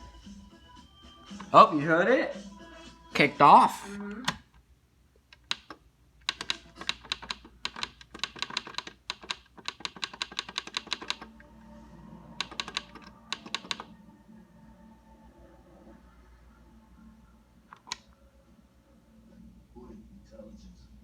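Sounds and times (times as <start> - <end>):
rapid sharp clicks: 5.4 - 11.3, 12.4 - 13.9
faint low hum: 11.2 - 21.0.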